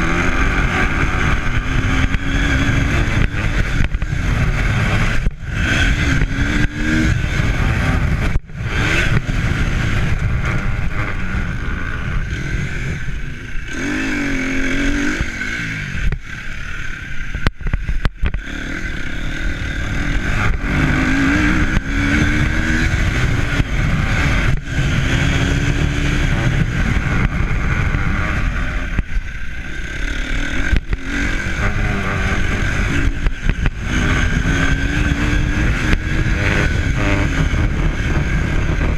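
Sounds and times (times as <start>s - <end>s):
wind buffeting microphone: 30.6s - 38.9s.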